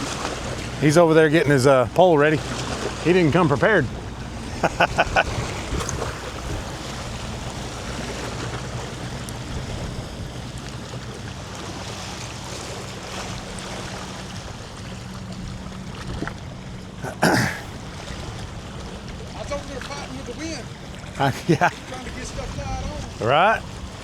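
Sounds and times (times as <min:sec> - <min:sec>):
wind buffeting microphone: 0:00.0 - 0:11.2, 0:21.8 - 0:24.0
shoreline water: 0:00.0 - 0:24.0.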